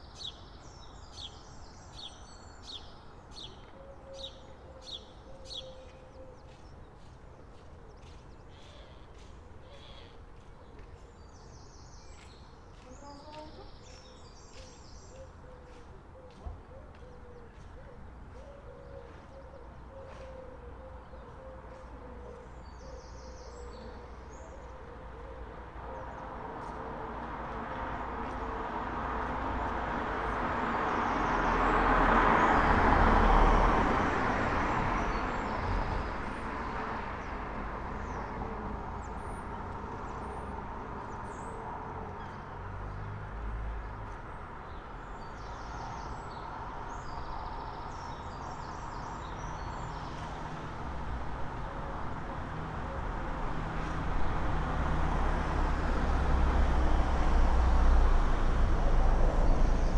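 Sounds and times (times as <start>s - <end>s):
steady traffic hum: 0.0s - 59.9s
vehicle passing: 25.7s - 59.9s.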